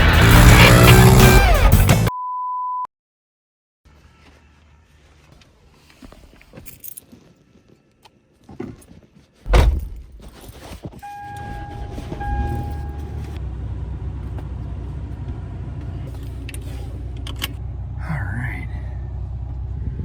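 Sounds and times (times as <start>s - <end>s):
car engine starting and idling: 0.0s - 2.1s, 11.0s - 20.0s
keys jangling: 6.6s - 7.2s
loud thump: 9.5s - 10.3s
car electronic chime tones: 11.0s - 13.4s.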